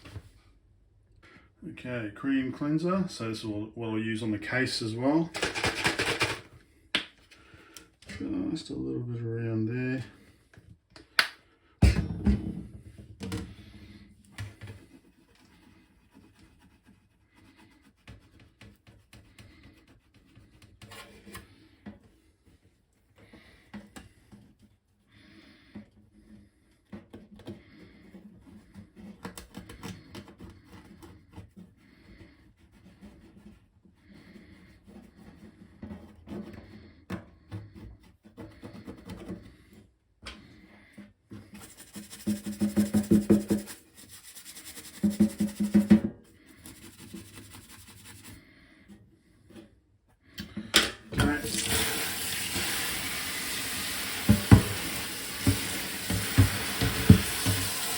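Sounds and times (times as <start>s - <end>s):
scratchy scrubbing on circuit board: 14.8s - 21.3s, 41.4s - 49.0s.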